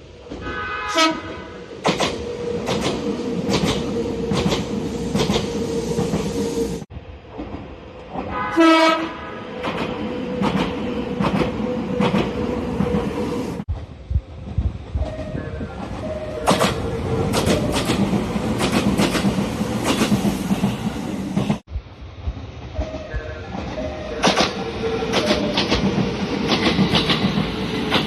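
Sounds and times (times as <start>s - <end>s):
train clickety-clack over rail joints: 0.2s - 6.5s, 7.1s - 28.0s
short train horn toot: 0.4s - 1.6s, 8.3s - 9.4s.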